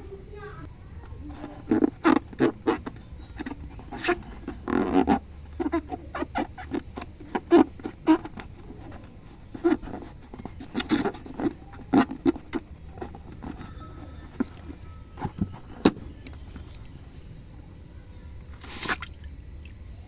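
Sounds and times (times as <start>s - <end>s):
slime squishing: 0.9s - 13.7s, 18.4s - 20.0s.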